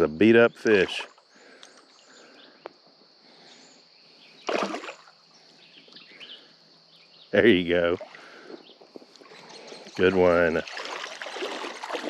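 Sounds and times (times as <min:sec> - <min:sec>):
creek ambience hiss: 0:07.4 - 0:12.0.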